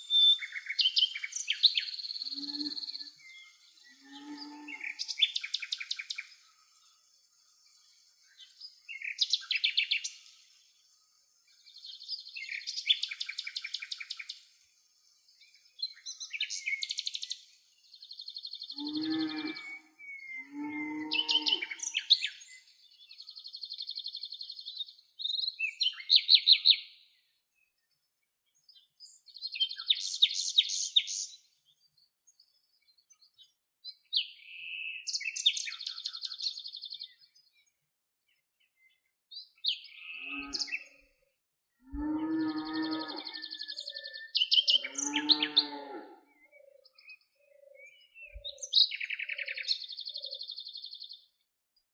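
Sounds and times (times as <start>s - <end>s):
songbirds trilling: 0.0s - 6.9s, 18.4s - 22.5s, 41.9s - 50.8s.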